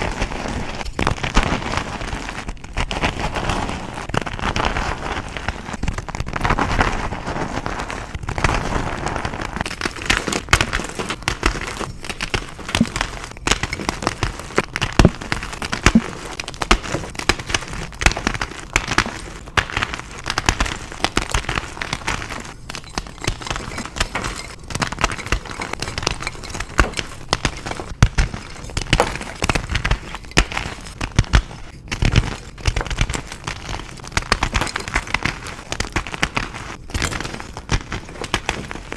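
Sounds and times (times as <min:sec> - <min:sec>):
chalk being crushed: 0:00.0 - 0:38.9.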